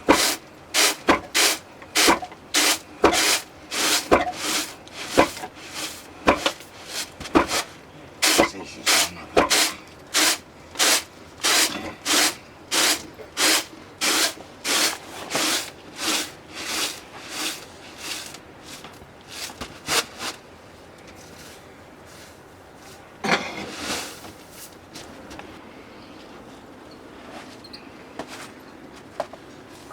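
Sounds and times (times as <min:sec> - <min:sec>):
stone hand mill grinding grain: 0:00.0 - 0:20.4.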